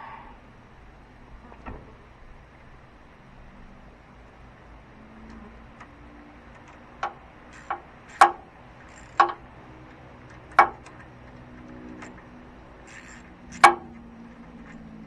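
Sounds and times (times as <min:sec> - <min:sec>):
sharp knocks: 0:07.0 - 0:09.4, 0:10.5 - 0:11.0, 0:13.5 - 0:14.0.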